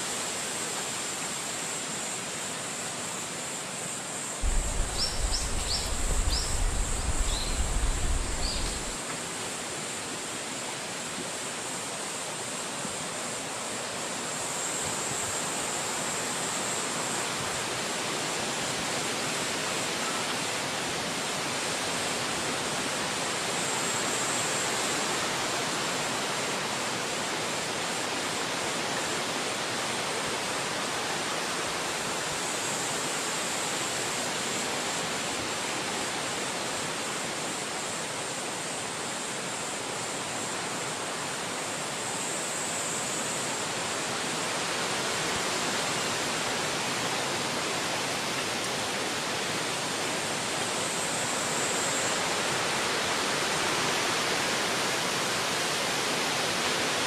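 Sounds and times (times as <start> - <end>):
wind through forest trees: 0.0 - 57.0
low rumble: 4.4 - 9.0.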